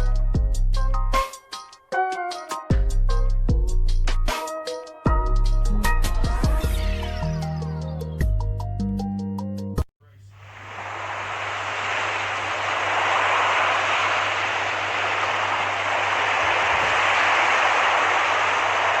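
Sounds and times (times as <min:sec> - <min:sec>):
steady rushing noise: 0:10.4 - 0:19.0.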